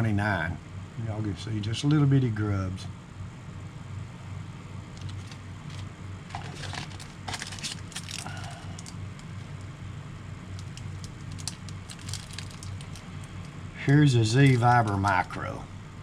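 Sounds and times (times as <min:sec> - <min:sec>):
low steady hum: 0:00.0 - 0:16.0
plastic packaging crinkling: 0:05.0 - 0:09.3, 0:10.5 - 0:13.5.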